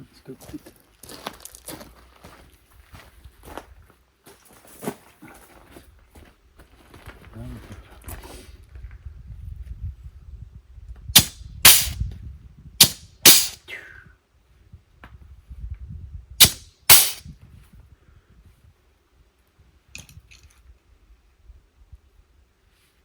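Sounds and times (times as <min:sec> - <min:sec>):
sharp knocks on metal parts: 0:11.2 - 0:12.0, 0:12.8 - 0:13.6, 0:16.4 - 0:17.2.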